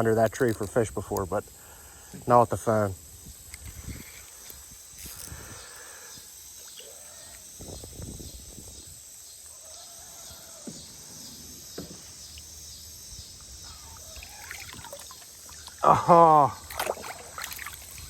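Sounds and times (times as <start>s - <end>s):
insects chirping: 0.0s - 18.0s
faint calls: 13.3s - 18.0s.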